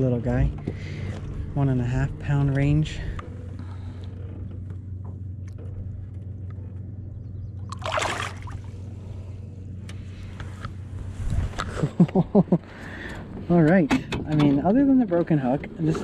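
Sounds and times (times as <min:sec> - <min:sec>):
steady low hum: 0:00.0 - 0:16.0
water splash beside kayak: 0:07.7 - 0:08.7.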